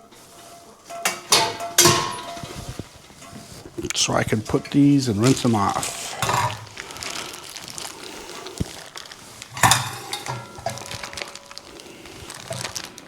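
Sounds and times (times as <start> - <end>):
dishes clinking and knocking: 0.8 - 3.9, 4.6 - 6.8, 9.5 - 11.5.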